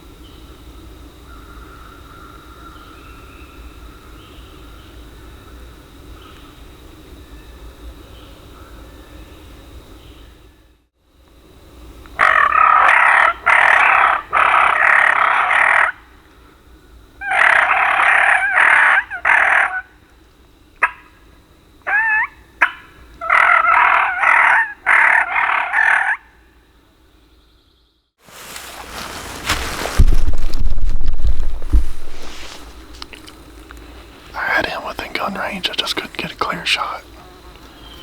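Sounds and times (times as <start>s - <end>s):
turkey gobbling: 12.2s - 16.0s, 21.9s - 26.3s
rushing rustling noise: 28.2s - 34.4s.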